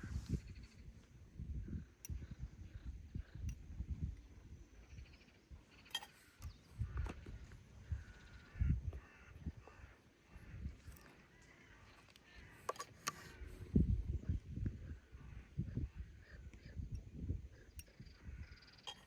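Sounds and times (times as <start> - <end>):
crows cawing: 8.0 - 13.4.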